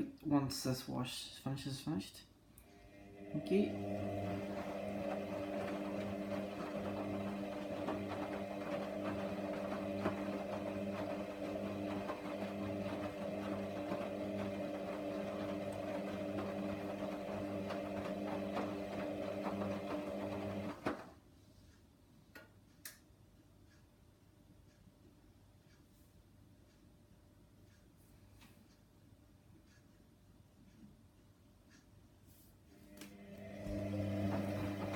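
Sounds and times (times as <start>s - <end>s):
washer dryer motor hum: 2.7s - 21.2s, 32.8s - 34.9s.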